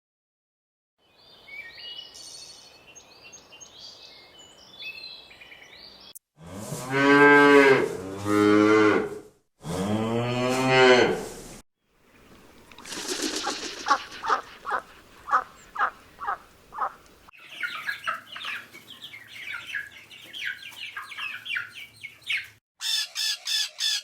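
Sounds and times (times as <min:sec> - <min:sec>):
cow mooing: 0:06.4 - 0:11.2.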